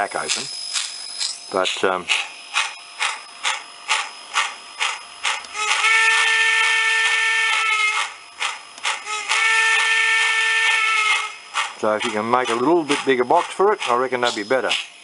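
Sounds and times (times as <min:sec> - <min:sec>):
steam locomotive chuffs: 0:00.0 - 0:14.9
steam whistle: 0:05.5 - 0:08.1, 0:09.0 - 0:11.4.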